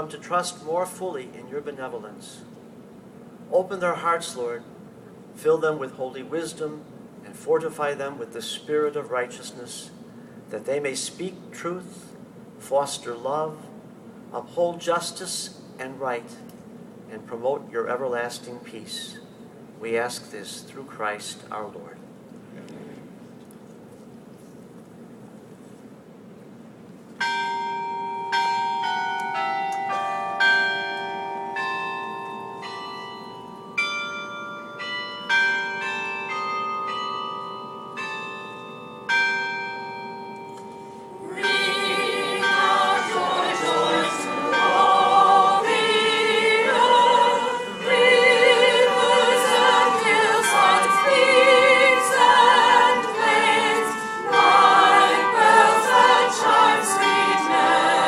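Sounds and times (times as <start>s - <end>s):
tower bells ringing: 27.2s - 58.0s
choir singing: 41.1s - 58.0s.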